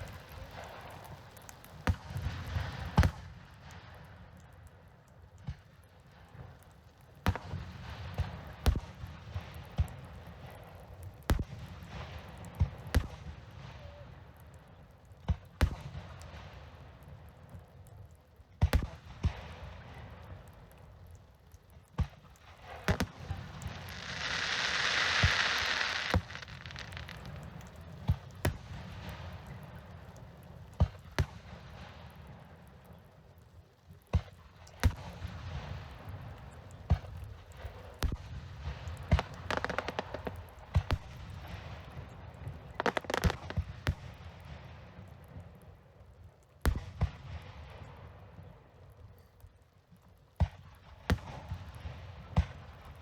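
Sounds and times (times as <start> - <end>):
fireworks bangs: 0.0 - 3.2, 22.5 - 30.0, 34.9 - 44.7
hissing crackle: 0.0 - 48.6.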